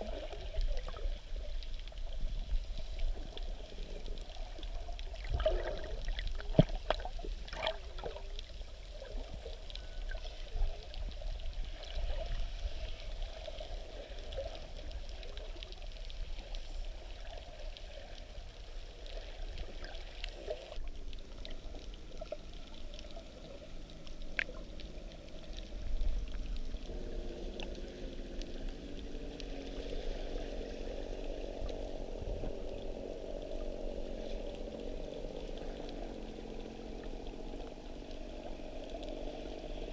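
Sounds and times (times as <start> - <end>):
faint steady drone: 0.0 - 39.9
underwater water sloshing: 0.0 - 39.9.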